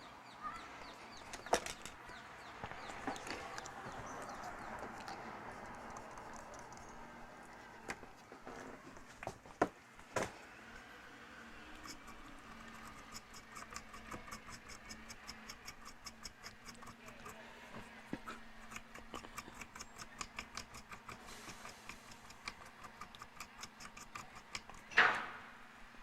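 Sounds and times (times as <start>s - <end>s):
small brush scrubbing circuit board: 11.6s - 24.9s.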